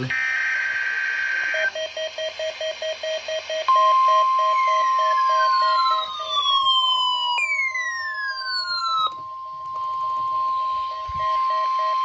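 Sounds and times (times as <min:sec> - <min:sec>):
fast beeping: 0:01.6 - 0:12.0
steady electronic tone: 0:03.7 - 0:12.0
falling siren-like sweeps: 0:03.9 - 0:12.0.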